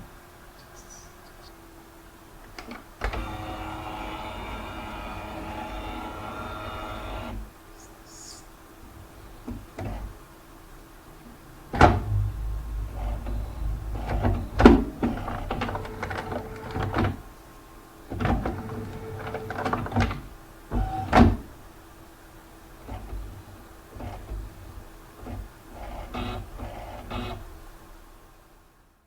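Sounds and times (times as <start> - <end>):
scanner motor whirring: 3.0 - 7.4, 12.0 - 17.1
scanner mechanical clunks: 11.3 - 17.4, 18.1 - 21.6.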